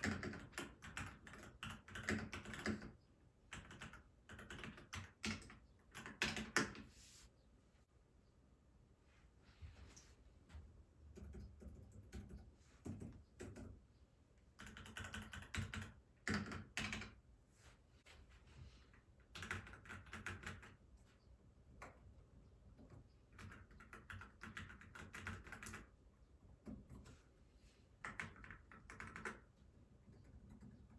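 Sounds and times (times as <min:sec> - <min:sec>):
mechanical keyboard typing: 0:00.0 - 0:06.9, 0:11.2 - 0:13.8, 0:14.6 - 0:17.2, 0:19.2 - 0:20.8, 0:22.8 - 0:25.9, 0:28.0 - 0:29.5, 0:30.1 - 0:30.9.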